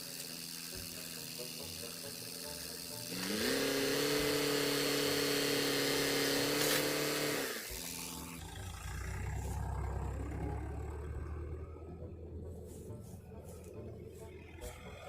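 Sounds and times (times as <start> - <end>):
motor spinning: 0.0 - 11.8
low rumble: 8.4 - 15.0.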